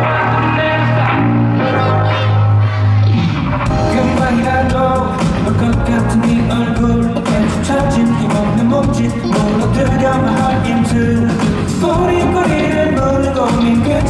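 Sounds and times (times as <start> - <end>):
pop music with drum beat: 3.4 - 14.0.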